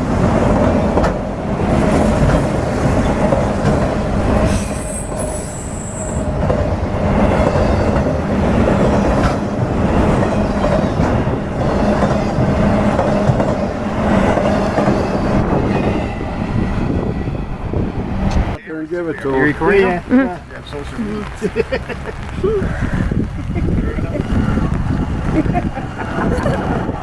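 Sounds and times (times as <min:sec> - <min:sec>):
train wheels rumbling on rails: 0:00.0 - 0:27.0
high wheel squeal: 0:04.2 - 0:18.6.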